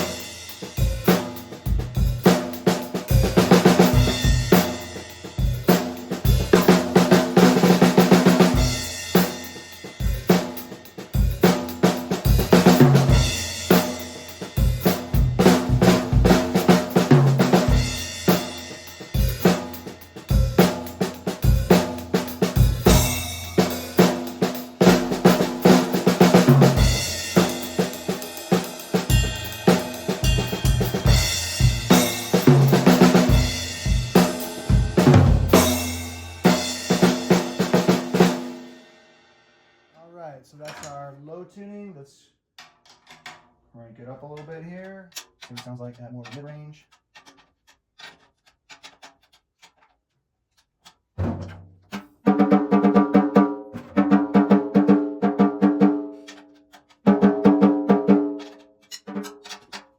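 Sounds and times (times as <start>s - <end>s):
bass drum: 0.0s - 37.9s
low-tuned snare drum: 0.0s - 38.8s, 51.2s - 56.4s, 57.0s - 58.5s
cymbals: 0.0s - 39.4s
crashing cymbals: 26.6s - 37.6s.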